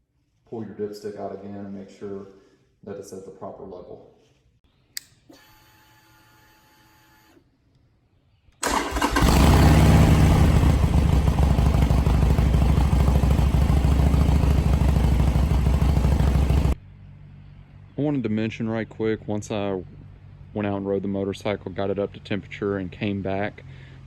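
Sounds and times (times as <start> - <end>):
click: 4.9 - 5.8
motorcycle engine rumbling: 8.6 - 23.6.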